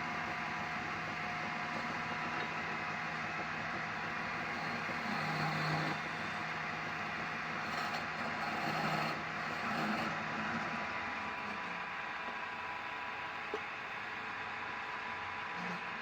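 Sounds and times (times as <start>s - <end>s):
wood lathe whirring: 4.0s - 6.4s, 7.6s - 11.8s.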